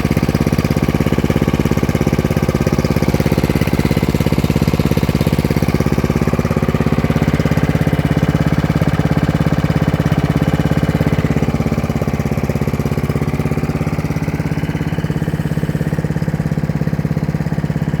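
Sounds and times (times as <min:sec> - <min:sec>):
lawn mower engine running: 0:00.0 - 0:18.0.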